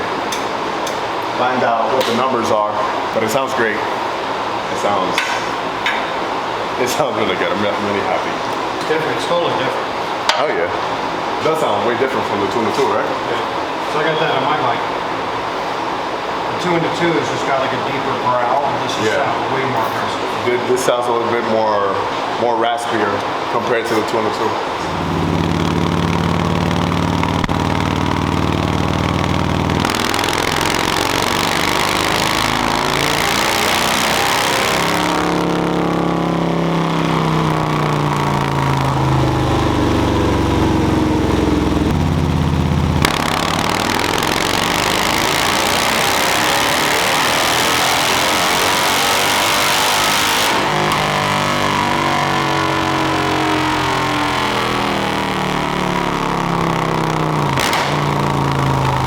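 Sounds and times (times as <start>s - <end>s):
motorcycle engine revving: 24.6s - 59.0s.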